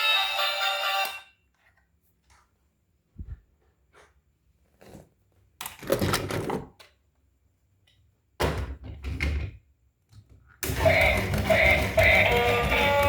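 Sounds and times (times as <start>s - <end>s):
music: 10.6s - 13.0s.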